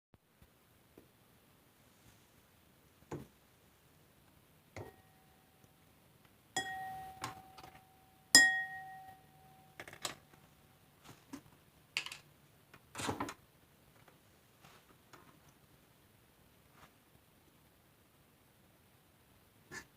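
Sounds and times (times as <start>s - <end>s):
sharp glassy clinks: 6.6s - 7.7s, 8.4s - 9.6s.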